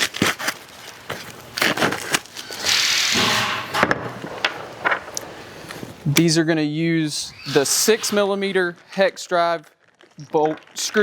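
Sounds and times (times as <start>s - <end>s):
packaging crinkling and rustling: 0.0s - 3.0s, 7.4s - 11.0s.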